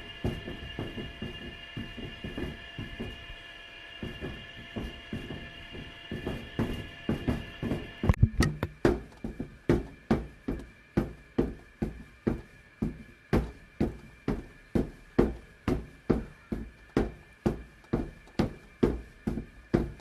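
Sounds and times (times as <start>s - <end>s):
high steady tone: 8.1s - 8.8s.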